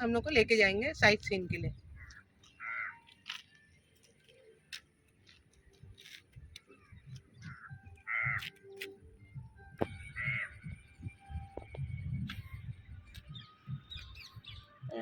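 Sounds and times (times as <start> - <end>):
crows cawing: 2.0 - 3.0, 7.5 - 8.5, 10.2 - 10.6.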